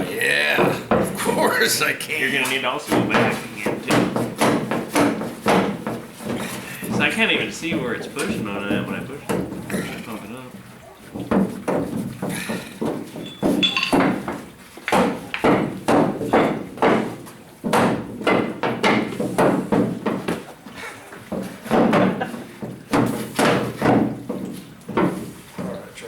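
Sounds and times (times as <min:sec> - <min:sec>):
sharp ringing knocks on steel: 0:13.2 - 0:14.3.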